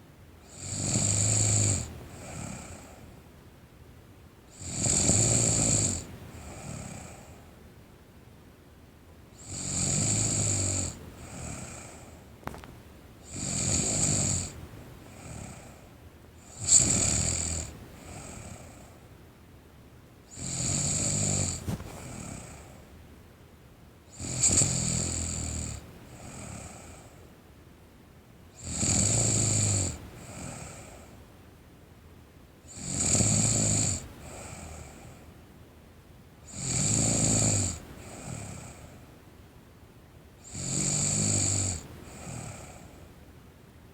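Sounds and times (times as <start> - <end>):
loud rattling snores: 0.5 - 3.0, 4.6 - 7.3, 9.4 - 12.6, 13.3 - 15.8, 16.4 - 18.9, 20.3 - 22.8, 24.1 - 27.1, 28.6 - 31.0, 32.7 - 35.1, 36.5 - 38.9, 40.4 - 43.0
soft breath: 6.3 - 7.6, 11.1 - 12.8, 21.0 - 23.0, 30.1 - 31.3, 34.2 - 35.4, 41.9 - 43.2.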